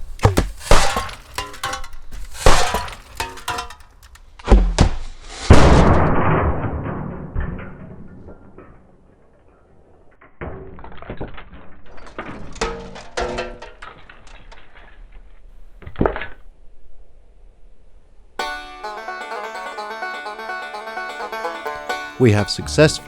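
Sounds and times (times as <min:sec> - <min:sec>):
apples striking laptop: 0:00.0 - 0:04.2
smash clattering: 0:00.0 - 0:04.4.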